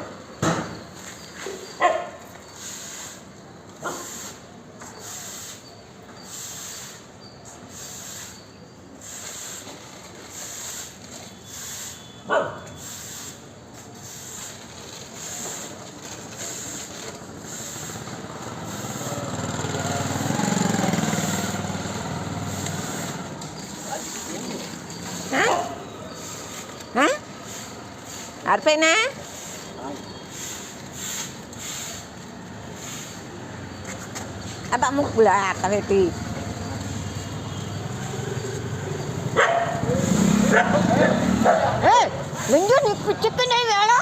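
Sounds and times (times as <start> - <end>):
dog barking: 1.8 - 2.2, 3.8 - 4.1, 12.2 - 12.7, 25.3 - 25.8, 39.4 - 42.2
vehicle passing: 17.3 - 28.2, 32.4 - 44.0.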